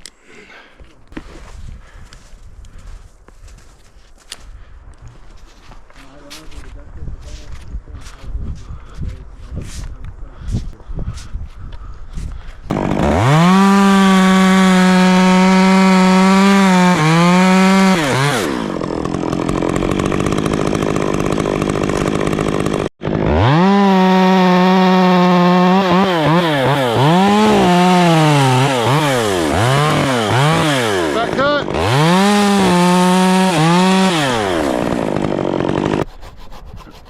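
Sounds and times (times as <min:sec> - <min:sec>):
chainsaw revving: 0:12.7 - 0:36.1.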